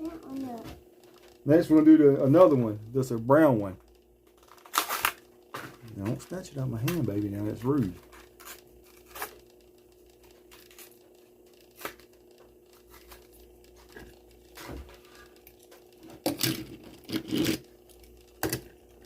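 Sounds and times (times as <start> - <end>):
plastic crinkling: 4.2 - 9.6
cardboard tearing: 4.5 - 5.2, 16.3 - 17.7.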